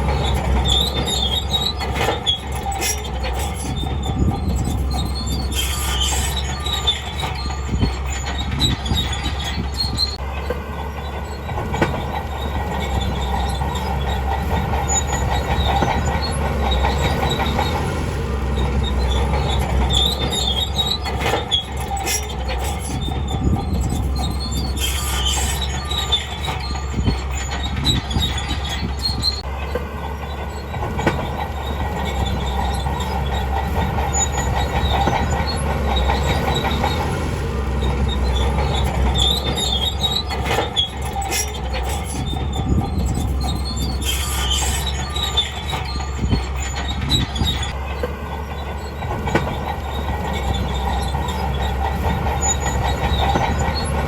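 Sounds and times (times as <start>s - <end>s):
diesel engine droning: 0.0s - 54.0s
steel tracks squealing: 0.0s - 54.0s
metallic clanks: 30.7s - 54.0s.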